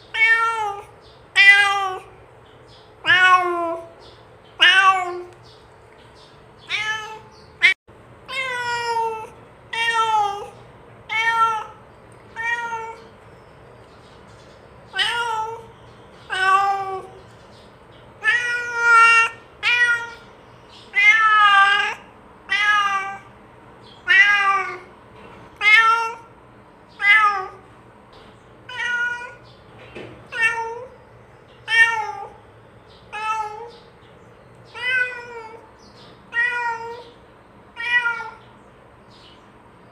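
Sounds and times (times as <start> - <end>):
cat meowing: 0.1 - 2.2, 3.0 - 4.0, 4.6 - 5.4, 6.6 - 13.1, 14.9 - 15.7, 16.3 - 17.2, 18.2 - 20.3, 20.9 - 23.3, 24.0 - 24.9, 25.6 - 26.3, 27.0 - 27.6, 28.7 - 29.5, 30.3 - 31.0, 31.6 - 32.4, 33.1 - 33.9, 34.7 - 35.7, 36.3 - 38.5.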